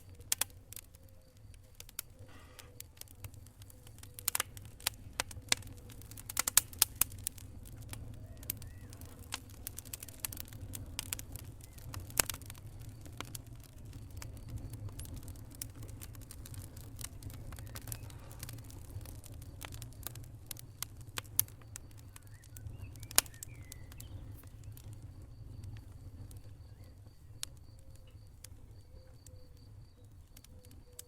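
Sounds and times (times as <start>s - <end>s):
low rumble of flames: 0.0s - 31.0s
wood fire crackling and popping: 0.0s - 31.0s.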